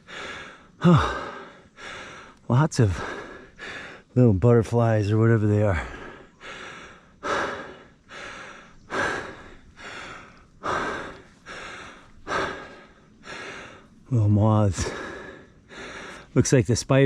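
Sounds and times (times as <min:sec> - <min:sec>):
man breathing hard: 0:00.0 - 0:04.2, 0:05.5 - 0:16.4.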